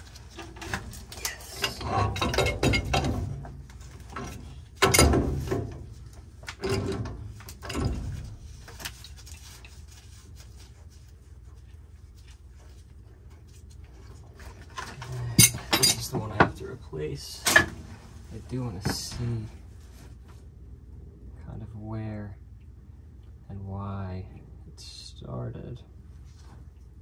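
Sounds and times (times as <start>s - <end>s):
metal pipe scraping and clicking: 0.0s - 10.1s
steady low hum: 0.0s - 27.0s.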